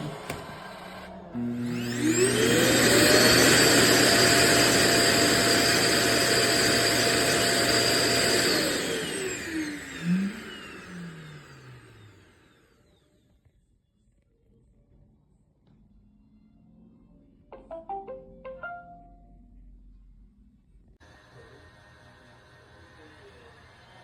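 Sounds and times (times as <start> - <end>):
robot vacuum motor whining: 0.0 - 13.2.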